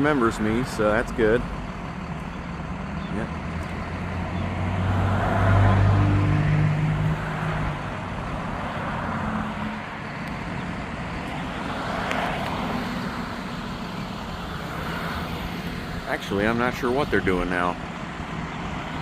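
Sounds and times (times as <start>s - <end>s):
vehicle engine hum: 0.0s - 19.0s.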